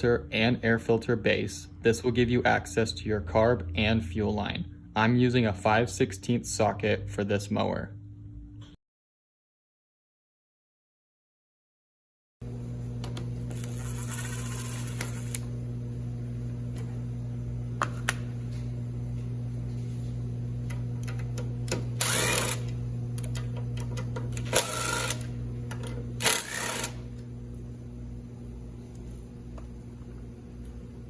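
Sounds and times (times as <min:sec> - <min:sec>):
steady electrical hum: 0:00.0 - 0:08.7, 0:12.4 - 0:31.0
ratchet clicking: 0:24.4 - 0:27.0.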